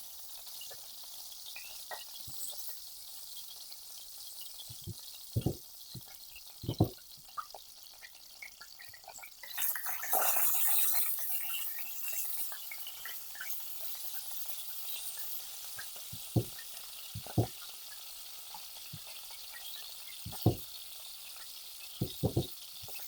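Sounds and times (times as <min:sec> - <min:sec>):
food sizzling in a frying pan: 0:00.0 - 0:23.0
utensil knocking on pan: 0:04.9 - 0:05.6, 0:06.7 - 0:07.0, 0:16.2 - 0:16.6, 0:17.2 - 0:17.6, 0:20.3 - 0:20.7, 0:22.0 - 0:22.6.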